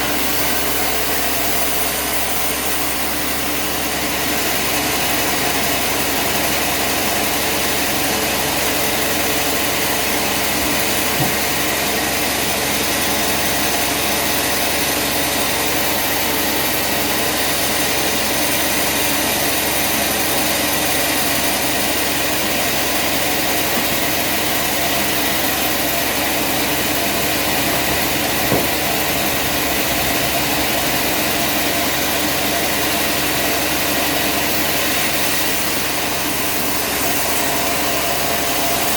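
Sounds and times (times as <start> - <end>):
engine-driven machinery running: 0.0 - 38.9
brief knocks: 11.1 - 11.6, 27.9 - 29.2.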